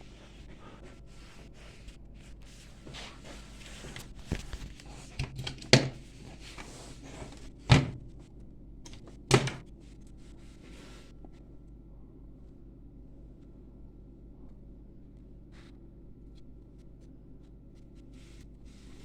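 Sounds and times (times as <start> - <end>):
faint steady low hum: 0.0 - 19.0.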